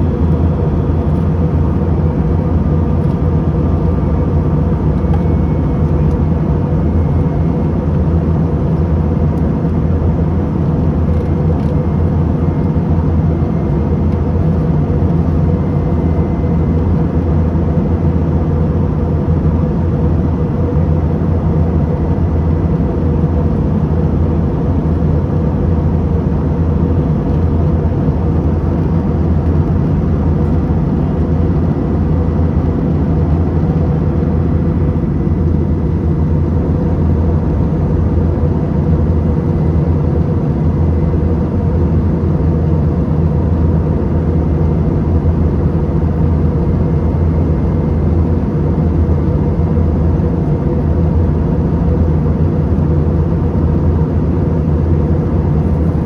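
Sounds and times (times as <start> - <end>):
airliner cabin drone: 0.0 - 56.0.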